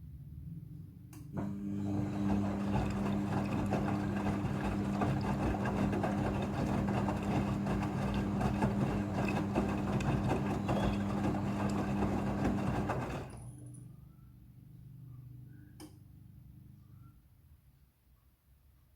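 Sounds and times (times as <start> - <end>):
washing machine motor hum: 1.3 - 13.8
water and drum noise: 1.8 - 13.4.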